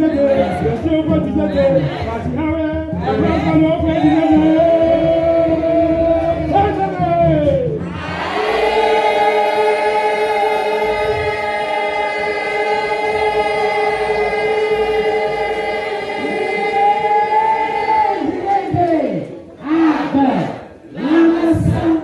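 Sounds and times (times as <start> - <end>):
choir holding a chord: 7.8 - 18.6.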